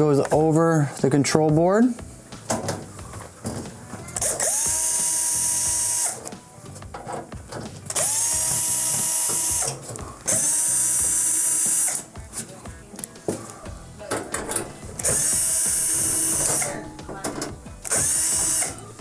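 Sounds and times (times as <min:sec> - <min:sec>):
cordless drill whining: 0:08.0 - 0:12.0, 0:15.0 - 0:16.8, 0:17.9 - 0:18.8.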